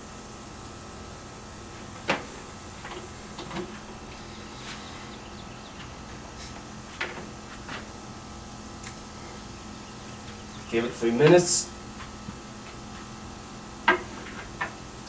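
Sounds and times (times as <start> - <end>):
electrical hum: 0.0 - 15.0
faint high whine: 0.0 - 15.0
tools knocking on workbench: 13.8 - 14.8.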